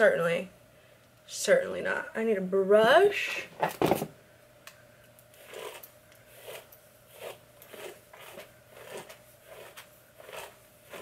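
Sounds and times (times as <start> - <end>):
hairbrush strokes through hair: 5.5 - 11.0.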